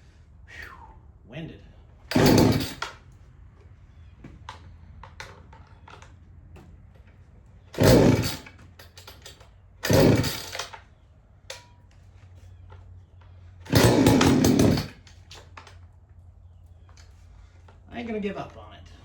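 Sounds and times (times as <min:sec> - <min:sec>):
starter cord pulled with ripping whirr: 0:02.1 - 0:03.2, 0:07.6 - 0:11.7, 0:12.7 - 0:15.8.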